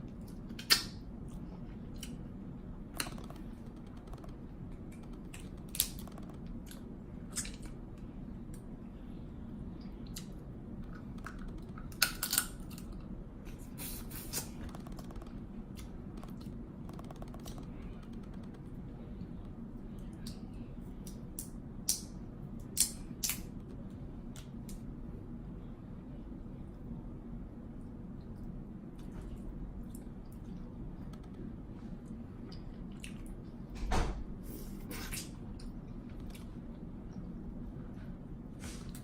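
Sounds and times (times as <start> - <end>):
steady low hum: 0.0 - 39.0
crab shells cracking: 3.0 - 6.5, 11.0 - 13.0.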